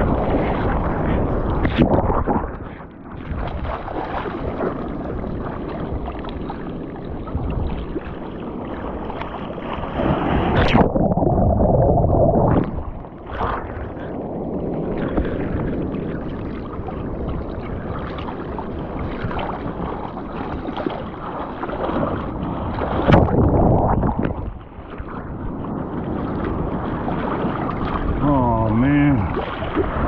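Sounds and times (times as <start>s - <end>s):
water sloshing and splashing: 0.0s - 30.0s
wind noise: 0.0s - 30.0s.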